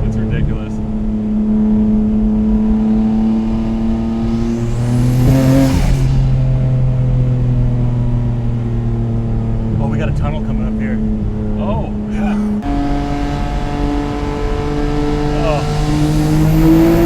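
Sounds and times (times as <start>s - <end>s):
car engine running while driving: 0.1s - 17.0s
short rushing sweep: 3.3s - 7.3s.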